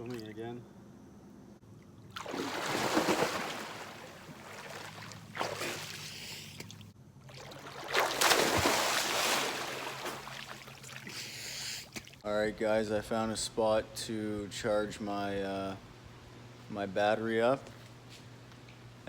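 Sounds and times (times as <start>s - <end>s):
water splashing around swimmer: 2.1s - 12.2s.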